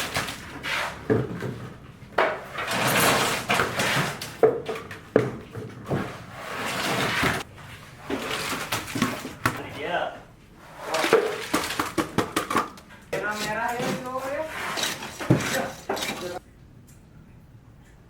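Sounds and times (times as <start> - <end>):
rough scraping: 2.4 - 4.4, 5.9 - 9.9, 10.6 - 16.4.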